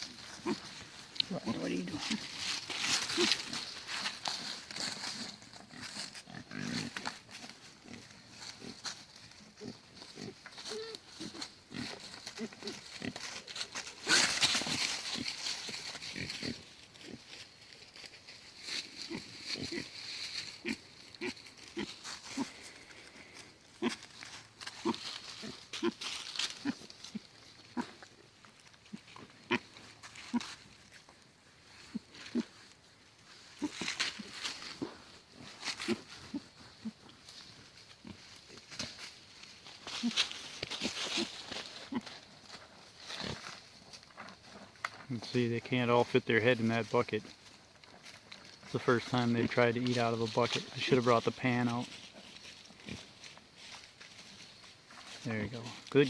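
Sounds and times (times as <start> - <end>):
pigs grunting: 0.0 - 17.3, 19.0 - 24.1, 24.7 - 28.1, 33.5 - 37.2
pig grunting: 0.1 - 8.8, 24.7 - 26.0.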